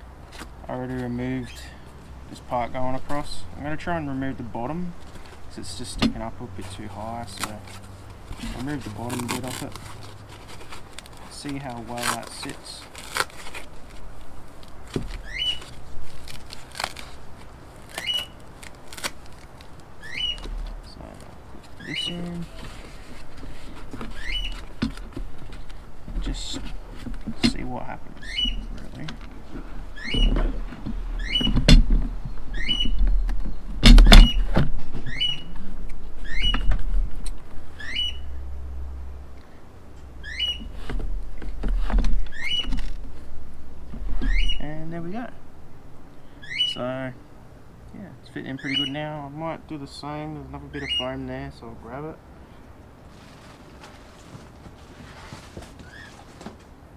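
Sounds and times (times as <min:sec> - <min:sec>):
knocks scrapes and rustling: 0:00.2 - 0:37.7, 0:40.0 - 0:45.0, 0:53.0 - 0:56.9
bird whistling call: 0:15.2 - 0:15.6, 0:20.0 - 0:20.5, 0:32.5 - 0:33.0, 0:35.1 - 0:35.6, 0:37.8 - 0:38.2, 0:40.2 - 0:40.6, 0:44.3 - 0:44.6
bird calling rising note: 0:20.0 - 0:21.0, 0:28.2 - 0:28.8, 0:29.9 - 0:31.6, 0:37.8 - 0:38.4, 0:40.2 - 0:40.7.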